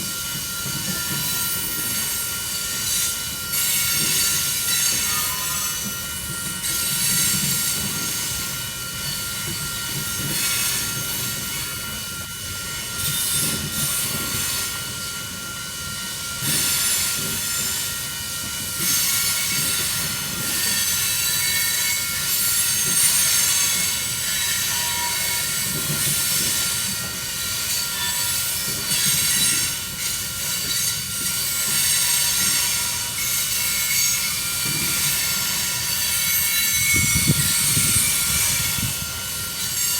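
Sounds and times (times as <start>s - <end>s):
freight train wheels on rails: 0.0s - 39.9s
high-pitched wheel squeal: 36.3s - 39.0s.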